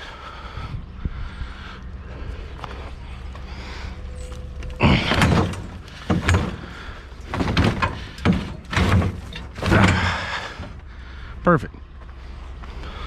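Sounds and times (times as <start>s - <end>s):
heavy items knocking and scraping: 4.3s - 10.9s.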